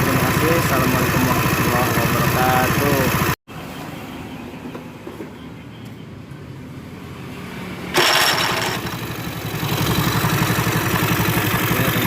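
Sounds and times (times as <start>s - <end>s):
engine idling: 0.0s - 3.4s, 8.0s - 12.0s
loud harsh noise: 7.9s - 10.6s.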